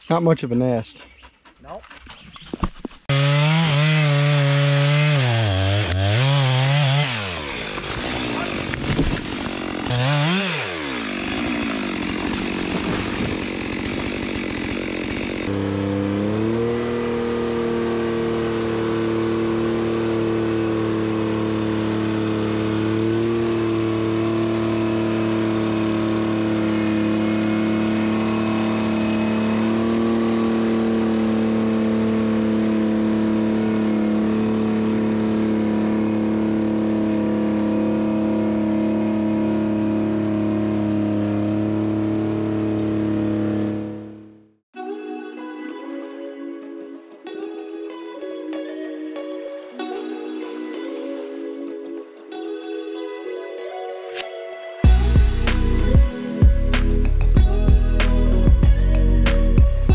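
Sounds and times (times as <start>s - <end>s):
chainsaw engine revving: 3.1s - 44.5s
vehicle engine running steadily: 15.4s - 44.5s.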